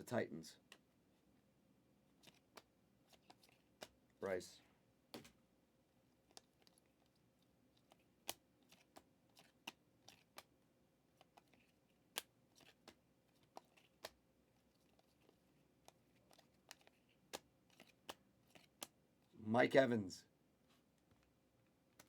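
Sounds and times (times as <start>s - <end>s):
trading cards clicking and snapping: 2.2s - 4.0s, 7.8s - 10.5s, 11.1s - 19.0s.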